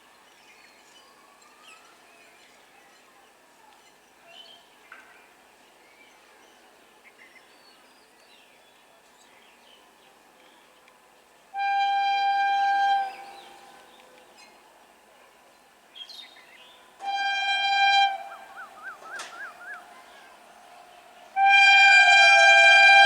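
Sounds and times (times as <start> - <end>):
train horn blast: 11.5 - 13.9, 17.0 - 23.0
faint bird chirps: 18.2 - 20.8.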